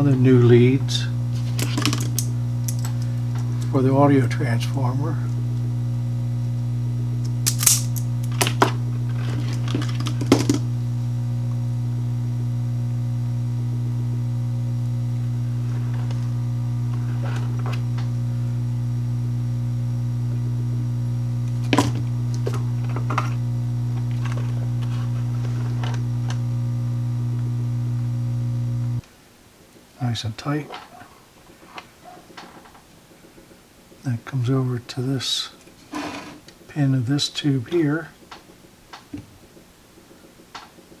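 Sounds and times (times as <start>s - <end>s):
electrical mains hum: 0.0s - 41.0s
clicks and taps of tools: 1.6s - 3.5s, 7.2s - 10.7s.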